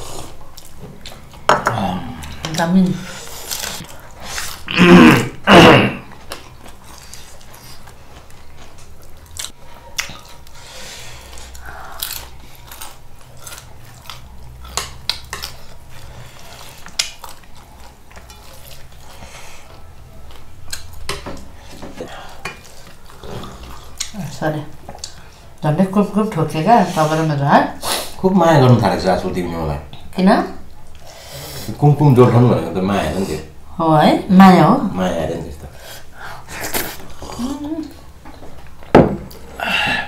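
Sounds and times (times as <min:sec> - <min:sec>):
chewing and biting: 0:06.1 - 0:10.6, 0:11.2 - 0:21.5.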